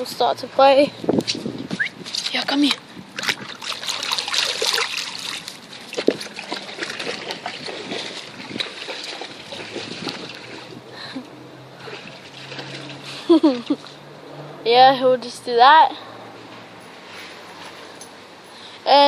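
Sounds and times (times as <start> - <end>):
water splashing and sloshing: 1.2 - 14.6.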